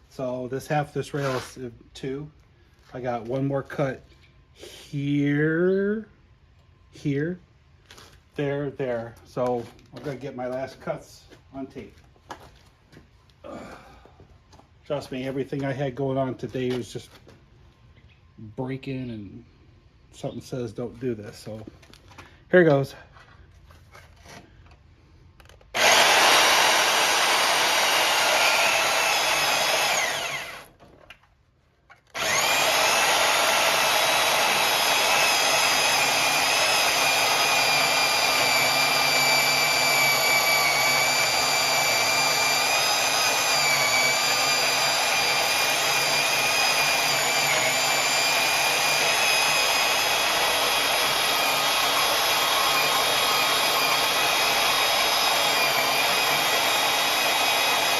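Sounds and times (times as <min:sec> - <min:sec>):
cutoff wheel whining through steel: 0:25.5 - 0:30.8, 0:32.0 - 0:57.9.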